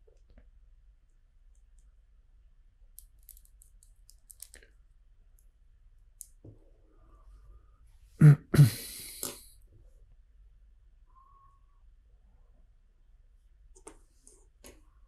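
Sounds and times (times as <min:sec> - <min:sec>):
plastic bricks clicking: 0:03.0 - 0:04.7.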